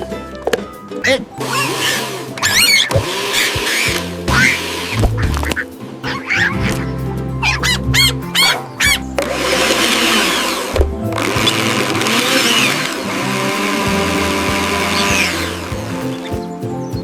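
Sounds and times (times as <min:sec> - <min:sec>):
background music: 0:00.0 - 0:17.0
blender whirring: 0:01.4 - 0:05.0, 0:09.2 - 0:15.8.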